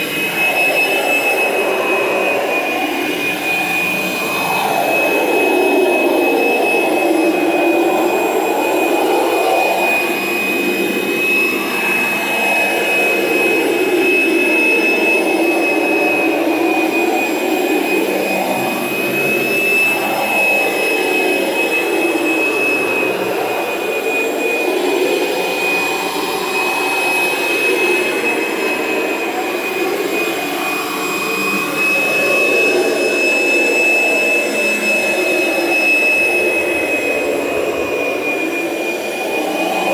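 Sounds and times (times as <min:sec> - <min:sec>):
vacuum motor whine: 0:00.0 - 0:39.9.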